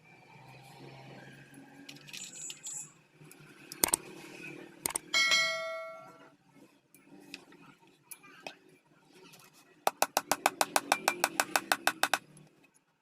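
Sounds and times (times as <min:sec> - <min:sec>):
metal part ringing like a bell: 0:05.1 - 0:06.3
sharp knocks: 0:09.9 - 0:12.2.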